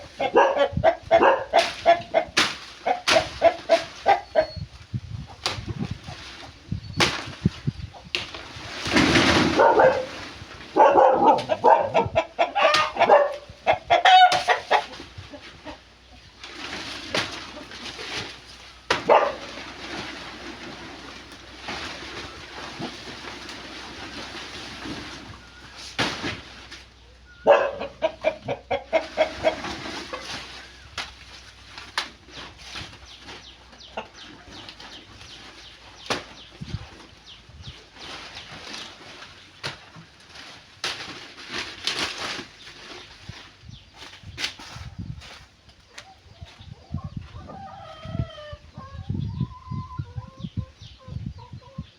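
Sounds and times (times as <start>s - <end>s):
chicken clucking: 0.0s - 4.7s, 10.8s - 16.3s, 27.3s - 30.4s, 33.5s - 34.8s, 45.8s - 51.9s
chickens clucking: 0.0s - 7.0s, 7.6s - 20.0s, 26.6s - 40.6s, 41.5s - 51.9s
rustling: 14.3s - 27.0s, 29.1s - 46.1s.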